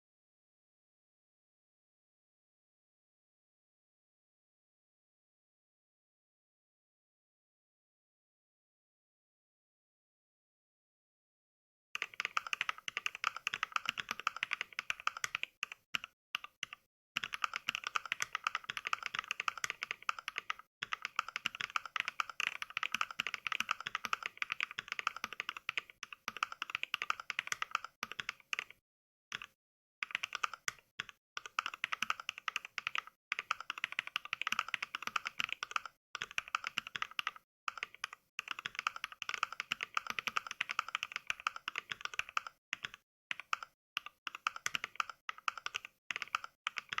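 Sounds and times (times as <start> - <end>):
mechanical keyboard typing clicks: 12.0 - 47.0.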